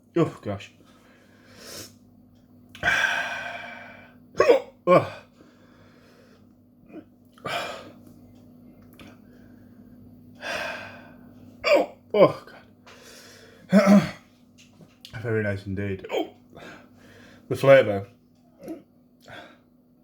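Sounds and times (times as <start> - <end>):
heavy breathing: 2.8 - 4.2, 5.2 - 6.5, 10.4 - 11.3, 12.9 - 13.8, 16.5 - 17.5
man hiccupping: 4.4 - 5.3, 11.6 - 12.6, 13.7 - 14.2, 16.0 - 16.4.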